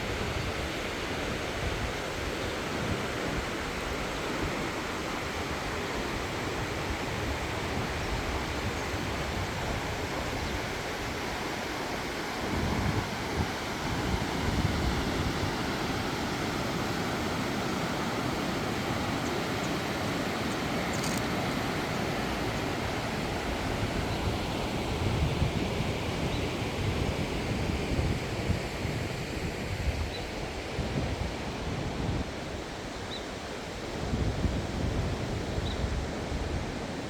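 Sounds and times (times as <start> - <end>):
river water rushing: 3.0 - 25.1
wind gusting on microphone: 18.8 - 37.0.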